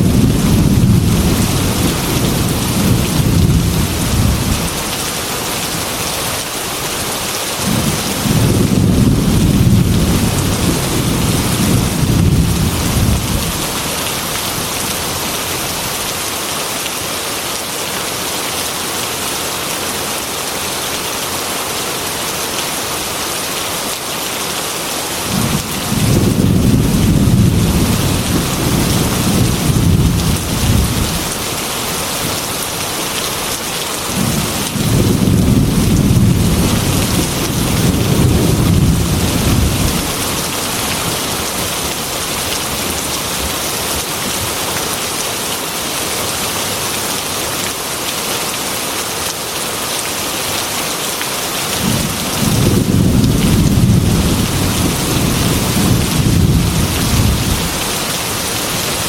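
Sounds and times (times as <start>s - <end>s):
low rolls of thunder: 0.0s - 4.6s, 7.6s - 13.8s, 25.3s - 31.3s, 34.2s - 40.2s, 51.8s - 57.8s
heavy rain falling: 0.0s - 59.0s.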